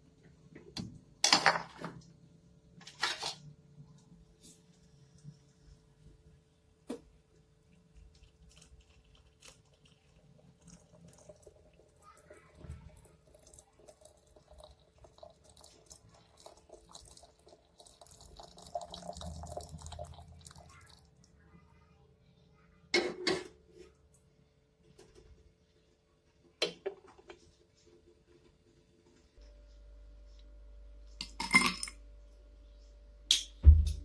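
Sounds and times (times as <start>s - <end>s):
water dripping: 7.6s - 21.3s
faint steady hum: 27.3s - 34.0s.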